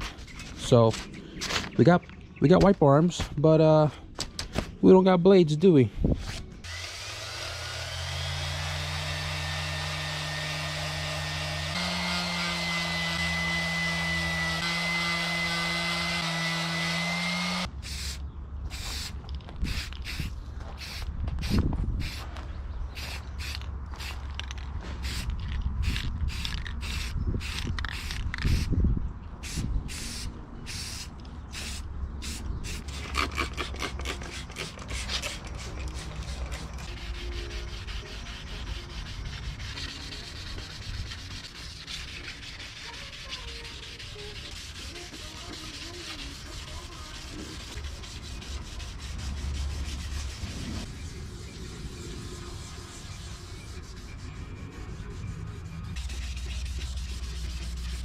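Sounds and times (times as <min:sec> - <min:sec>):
small electric motor whining: 0:06.6 - 0:17.7.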